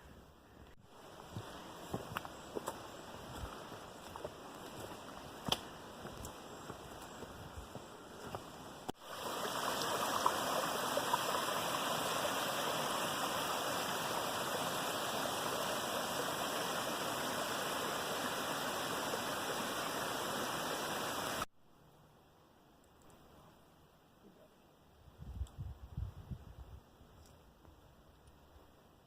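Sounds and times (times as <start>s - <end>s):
brook water rushing: 8.9s - 21.5s.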